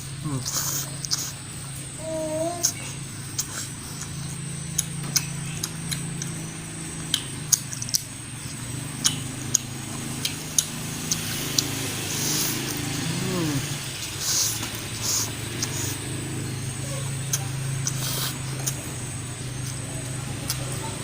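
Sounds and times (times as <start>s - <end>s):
steady low hum: 0.0s - 21.0s
lip smacks: 0.4s - 1.4s, 2.6s - 6.4s, 7.0s - 16.1s, 17.0s - 19.0s, 20.4s - 20.8s
chewing with wet clicks: 1.0s - 1.3s, 3.3s - 11.8s, 15.0s - 16.1s, 17.2s - 20.9s.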